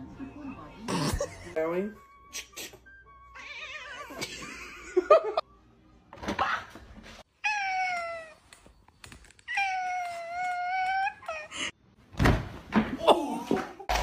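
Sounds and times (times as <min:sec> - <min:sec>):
cat meowing: 0:03.3 - 0:04.2.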